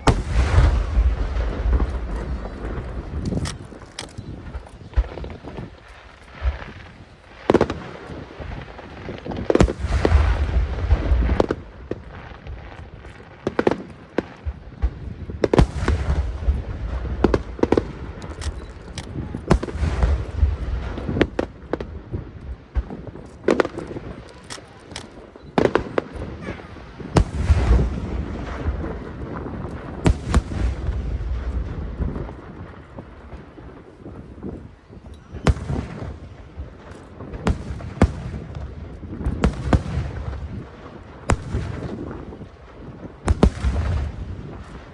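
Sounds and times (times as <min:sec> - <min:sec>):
deep rumbling booms: 0:00.0 - 0:05.7, 0:27.2 - 0:33.3
fireworks cracks and bangs: 0:00.0 - 0:44.9.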